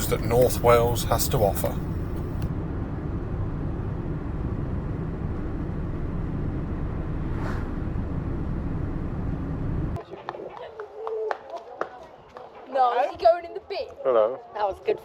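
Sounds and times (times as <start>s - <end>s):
van road and engine rumble: 0.0s - 10.0s
whoosh: 7.2s - 8.0s.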